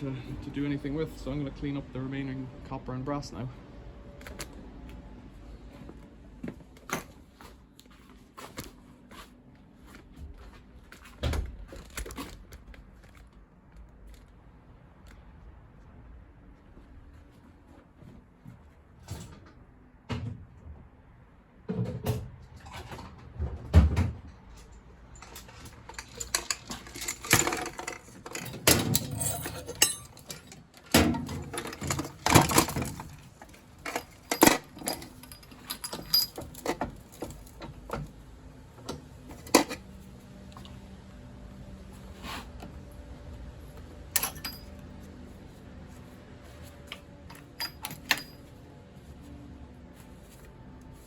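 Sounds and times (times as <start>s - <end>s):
metal parts clinking: 25.1s - 37.6s, 44.1s - 44.8s, 47.3s - 48.5s.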